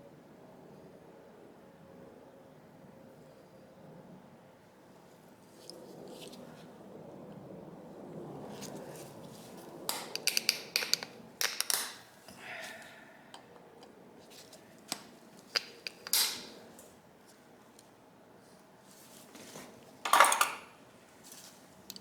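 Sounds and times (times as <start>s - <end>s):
hand tools clicking on metal parts: 9.9s - 12.1s, 14.9s - 16.5s, 20.1s - 20.7s.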